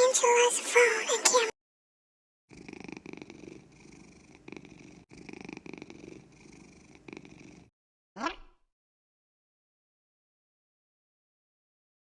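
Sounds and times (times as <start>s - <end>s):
cat purring: 2.5s - 7.7s.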